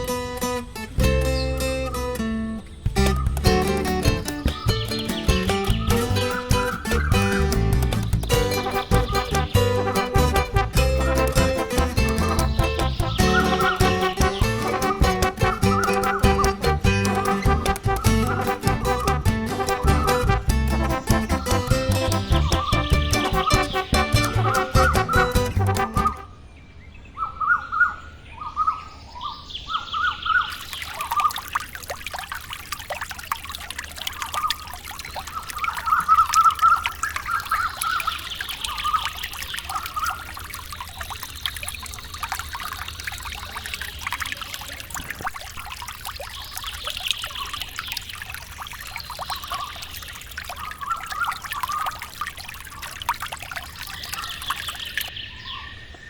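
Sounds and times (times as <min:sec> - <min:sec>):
water pouring and trickling: 0:00.0 - 0:26.3, 0:30.4 - 0:55.2
small birds chirping: 0:00.0 - 0:31.8, 0:34.0 - 0:56.0.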